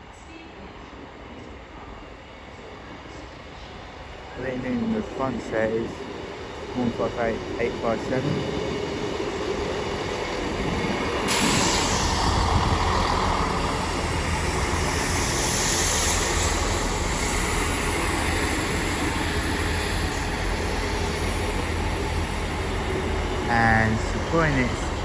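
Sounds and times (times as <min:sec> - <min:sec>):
diesel train engine hum: 0:04.3 - 0:25.0
loud hiss: 0:11.1 - 0:23.4.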